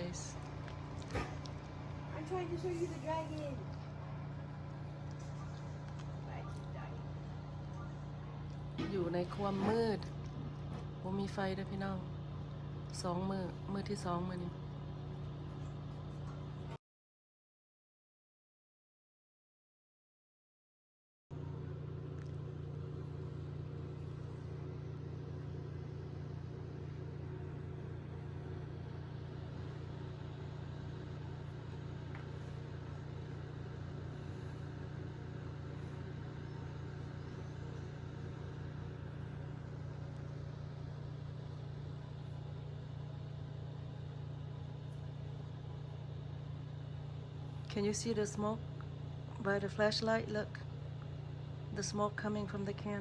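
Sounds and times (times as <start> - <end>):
low hum or rumble: 21.3 - 53.0.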